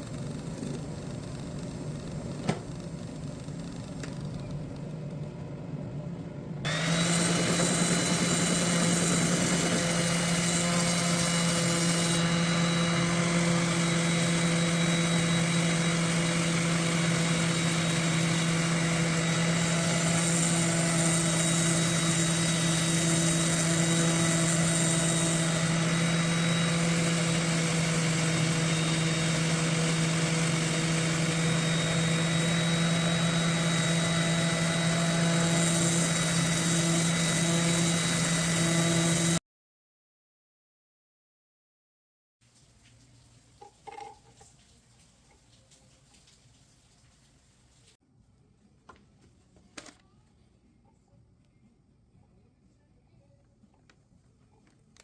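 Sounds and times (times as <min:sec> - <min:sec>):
electric motor humming and whining: 0:06.6 - 0:39.4.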